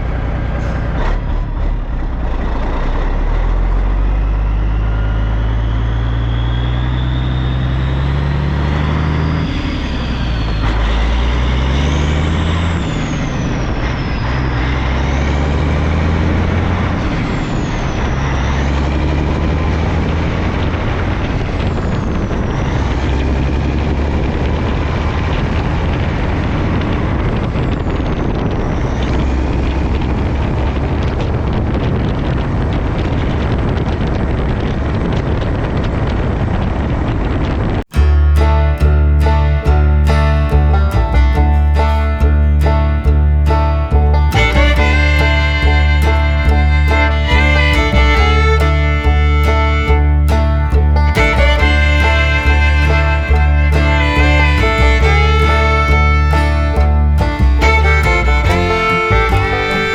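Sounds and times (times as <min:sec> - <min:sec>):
truck engine shifting gears: 0:00.0 - 0:59.9
thin high whistle: 0:04.3 - 0:08.2.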